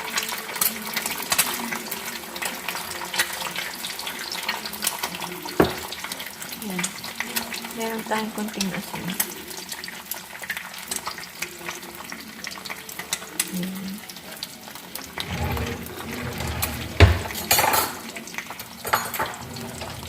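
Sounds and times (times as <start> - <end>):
egg sizzling in a pan: 0.0 - 20.0
kitchenware clatter: 0.2 - 6.2, 15.2 - 20.0.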